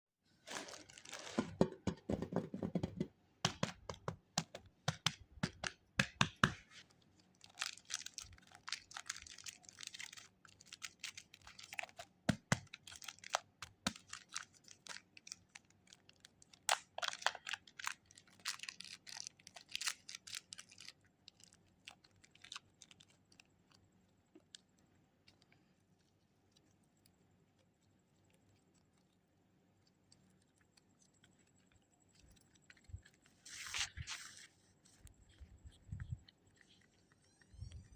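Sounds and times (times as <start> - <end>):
wrappers crinkling and tearing: 0.4 - 1.6, 6.8 - 23.5, 33.4 - 34.7.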